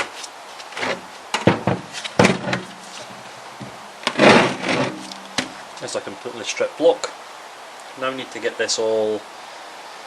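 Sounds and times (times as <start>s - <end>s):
cylinder head clunking on workbench: 1.4s - 5.6s
scraping rush: 1.9s - 5.7s.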